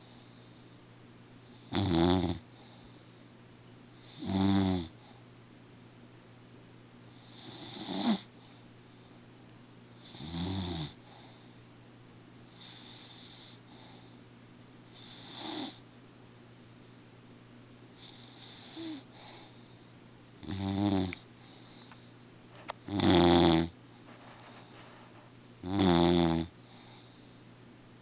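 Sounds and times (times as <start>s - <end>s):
person snoring: 1.7s - 2.4s, 7.4s - 8.3s, 20.4s - 21.2s, 22.9s - 23.7s, 25.6s - 26.5s.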